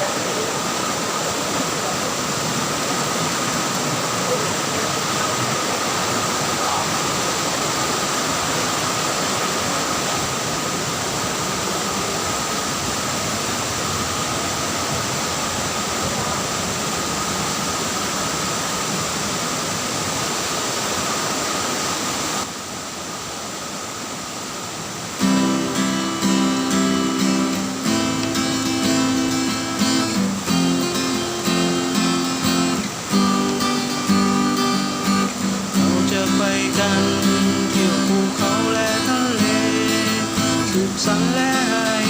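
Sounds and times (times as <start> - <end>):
waterfall rushing: 0.0 - 42.0
strummed acoustic guitar music: 25.2 - 42.0
thin high tone: 25.2 - 42.0.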